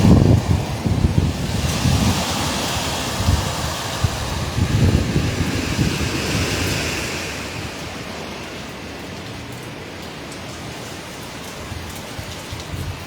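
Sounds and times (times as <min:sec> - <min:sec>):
wind gust buffeting microphone: 0:00.0 - 0:09.0
driving rain hissing: 0:00.0 - 0:13.0.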